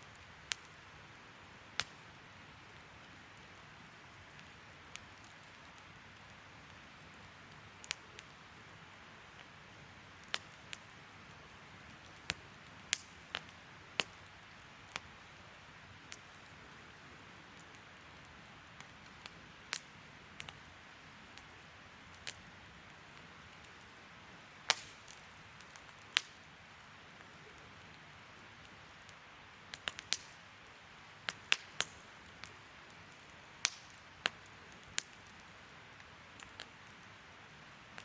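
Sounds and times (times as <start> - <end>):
wood fire popping and snapping: 0.0 - 38.0.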